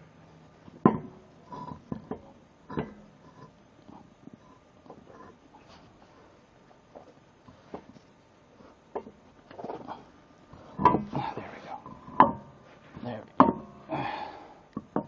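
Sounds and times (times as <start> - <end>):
sharp metallic knocks with ring: 13.4 - 13.8.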